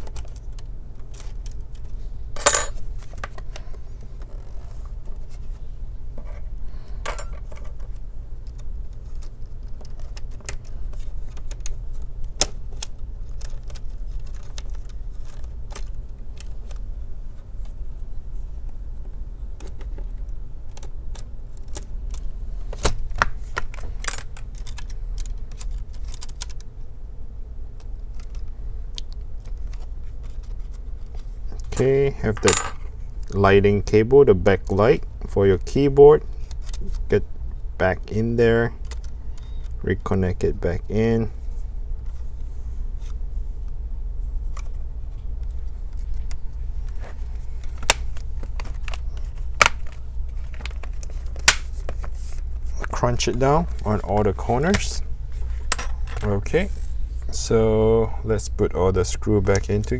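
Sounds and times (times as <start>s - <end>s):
plastic laptop parts clicking: 0.0s - 2.0s, 7.2s - 16.9s, 19.0s - 26.7s, 27.8s - 31.8s, 38.8s - 39.8s, 45.4s - 54.9s
steady low hum: 0.0s - 59.9s.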